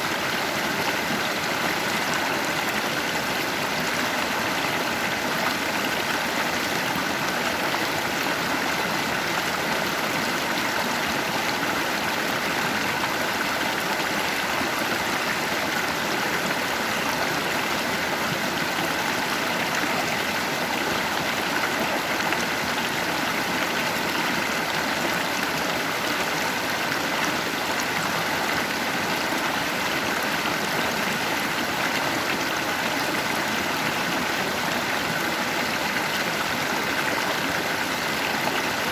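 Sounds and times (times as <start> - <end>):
stream flowing over rocks: 0.0 - 38.9.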